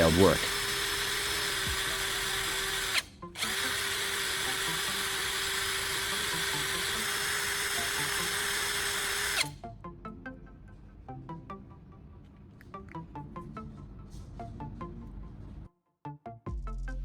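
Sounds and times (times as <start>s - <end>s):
faint background music: 0.0s - 0.5s, 1.4s - 17.0s
power drill running: 0.0s - 9.6s.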